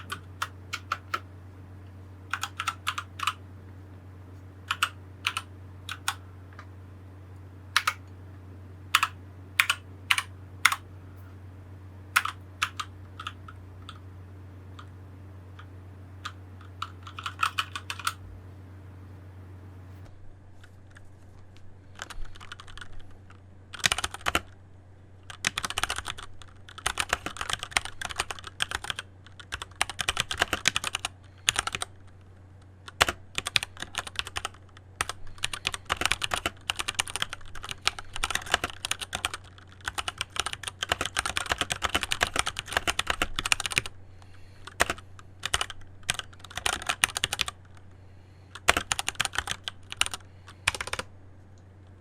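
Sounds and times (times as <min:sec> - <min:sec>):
mechanical keyboard typing: 0:00.0 - 0:01.3, 0:02.3 - 0:03.4, 0:04.6 - 0:06.2, 0:07.7 - 0:08.1, 0:08.9 - 0:10.8, 0:12.1 - 0:14.0, 0:15.6 - 0:18.2, 0:22.0 - 0:24.6, 0:25.3 - 0:32.2, 0:32.8 - 0:43.9, 0:44.6 - 0:47.8, 0:48.5 - 0:51.1
low steady hum: 0:00.0 - 0:52.0.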